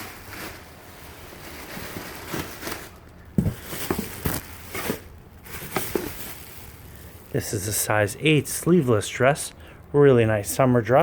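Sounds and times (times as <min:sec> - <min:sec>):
packaging rustling: 0:00.0 - 0:07.4.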